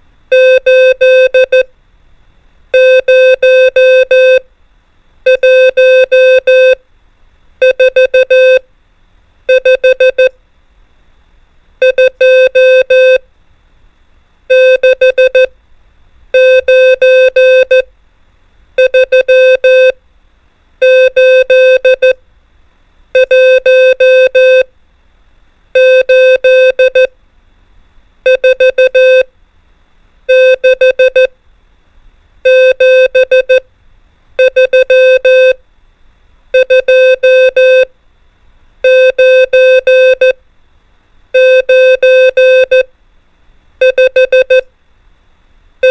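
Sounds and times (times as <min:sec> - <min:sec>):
morse code beeps: 0:00.3 - 0:01.7, 0:02.8 - 0:04.4, 0:05.3 - 0:06.8, 0:07.6 - 0:08.6, 0:09.5 - 0:10.3, 0:11.8 - 0:13.2, 0:14.5 - 0:15.5, 0:16.4 - 0:17.9, 0:18.8 - 0:20.0, 0:20.8 - 0:22.2, 0:23.2 - 0:24.7, 0:25.8 - 0:27.1, 0:28.3 - 0:29.3, 0:30.3 - 0:31.3, 0:32.5 - 0:33.6, 0:34.4 - 0:35.6, 0:36.6 - 0:37.9, 0:38.8 - 0:40.4, 0:41.4 - 0:42.9, 0:43.8 - 0:44.6.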